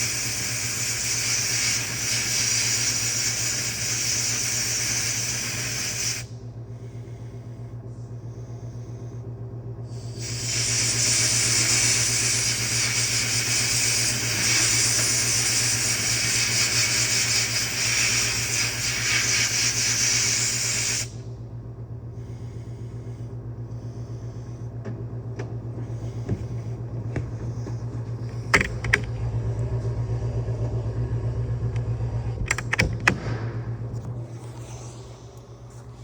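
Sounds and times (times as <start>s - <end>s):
loud steady hissing: 0.0s - 6.3s, 10.0s - 21.2s
low hum: 6.2s - 10.7s, 21.0s - 36.0s.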